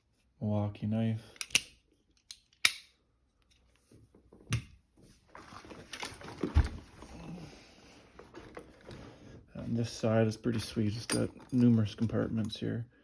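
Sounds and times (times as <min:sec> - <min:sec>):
rustling and clatter: 0:03.9 - 0:09.3
hand tools clicking and rattling: 0:10.6 - 0:12.6.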